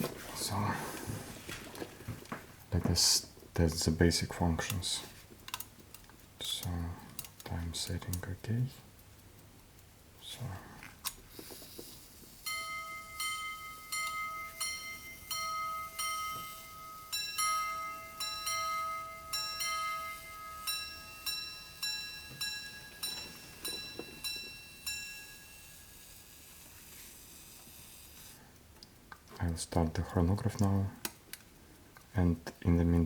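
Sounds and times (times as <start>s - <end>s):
pocket watch chiming on gongs: 12.4s - 26.7s.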